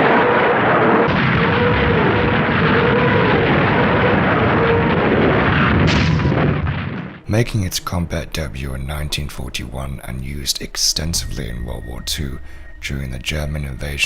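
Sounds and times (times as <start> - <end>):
faint wavering howl: 0.0 - 5.5, 7.8 - 14.0
rockets launching roar: 0.0 - 7.3.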